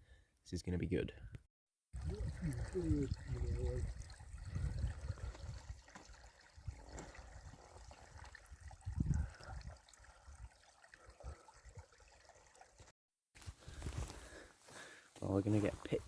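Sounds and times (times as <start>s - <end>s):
wind buffeting microphone: 2.0s - 5.8s, 8.5s - 9.8s.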